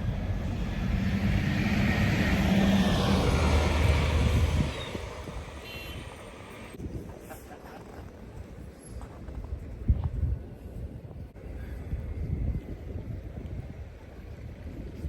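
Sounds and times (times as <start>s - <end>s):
vehicle driving past: 0.0s - 6.8s.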